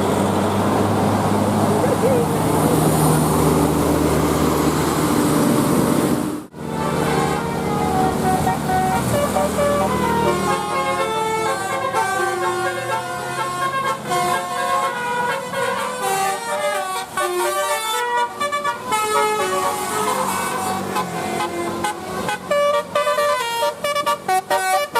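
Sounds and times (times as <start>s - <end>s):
bus engine running low: 0.0s - 24.9s
multi-note air horn tune: 6.6s - 24.9s.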